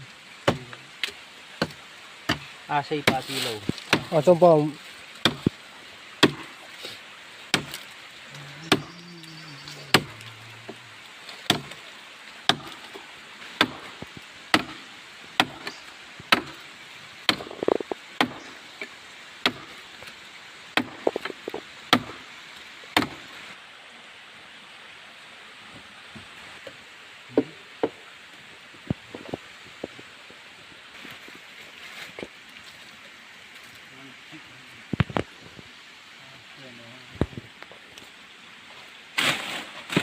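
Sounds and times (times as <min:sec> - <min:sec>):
axe chopping wood: 0:00.4 - 0:00.7, 0:01.6 - 0:04.3, 0:05.2 - 0:05.6, 0:06.2 - 0:06.6, 0:07.5 - 0:07.8, 0:08.7 - 0:08.9, 0:09.9 - 0:10.2, 0:11.4 - 0:11.8, 0:12.5 - 0:13.0, 0:13.6 - 0:18.5, 0:19.4 - 0:19.8, 0:20.8 - 0:22.2, 0:23.0 - 0:23.3.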